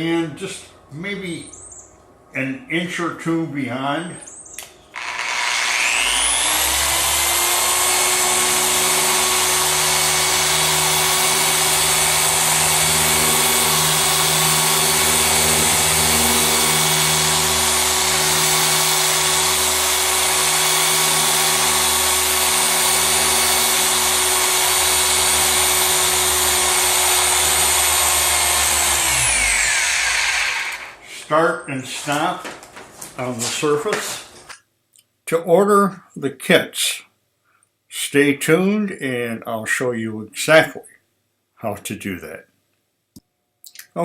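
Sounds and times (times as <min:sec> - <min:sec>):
air sander whining: 0:04.9 - 0:31.3.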